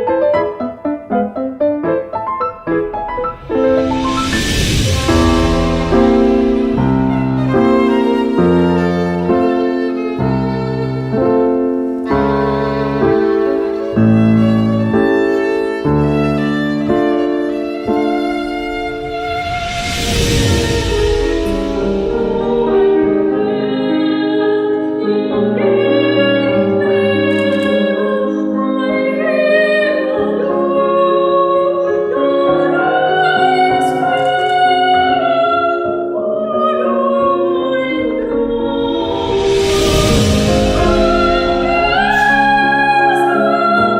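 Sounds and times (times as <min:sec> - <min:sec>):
piano chords: 0:00.0 - 0:43.9
instrumental accompaniment: 0:00.1 - 0:28.2, 0:36.9 - 0:43.9
violins playing slow melody: 0:05.2 - 0:19.8
operatic singing: 0:11.9 - 0:43.9.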